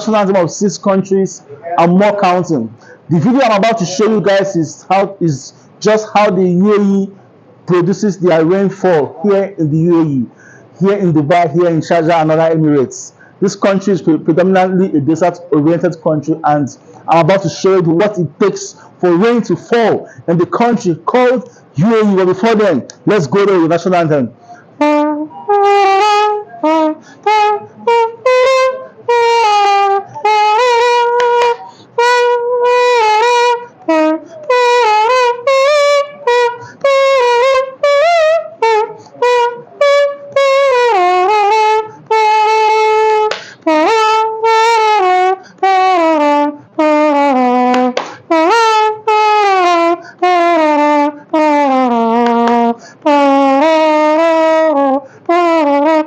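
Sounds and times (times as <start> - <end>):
mouth trumpet melody: 0.0 - 56.0
person breathing: 2.8 - 3.1, 10.3 - 10.8, 13.2 - 13.4, 18.8 - 19.0, 20.0 - 20.3, 21.5 - 21.8, 24.4 - 24.8, 27.0 - 27.2, 31.7 - 32.0, 36.6 - 36.8, 43.4 - 43.6, 52.8 - 53.0.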